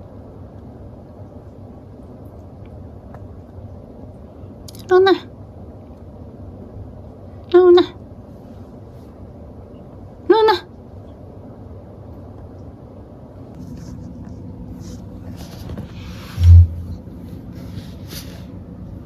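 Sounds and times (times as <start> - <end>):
steady low hum: 0.0 - 19.0
faint rustling: 13.4 - 18.7
dull low thump: 16.4 - 17.2.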